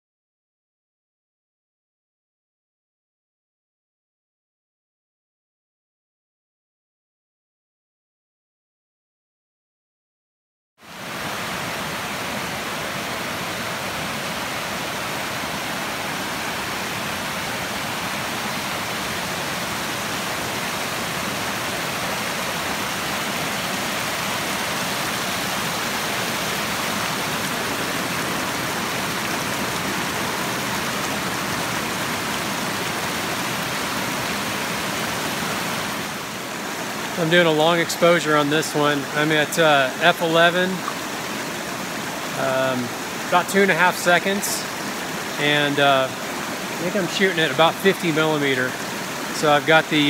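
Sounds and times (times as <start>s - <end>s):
waterfall rushing: 10.8s - 50.0s.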